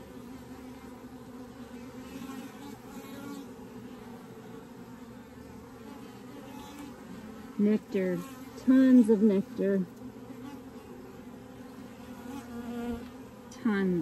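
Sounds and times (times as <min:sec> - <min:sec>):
bees buzzing: 0:00.0 - 0:14.0
person speaking: 0:07.6 - 0:09.9, 0:13.5 - 0:14.0.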